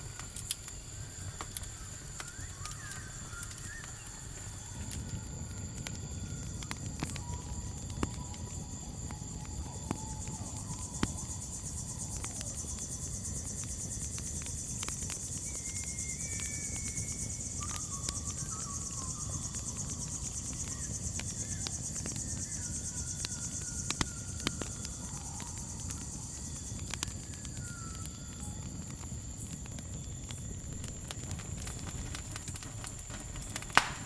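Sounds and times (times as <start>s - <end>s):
campfire crackles: 0.0s - 34.0s
crickets chirping: 0.0s - 34.0s.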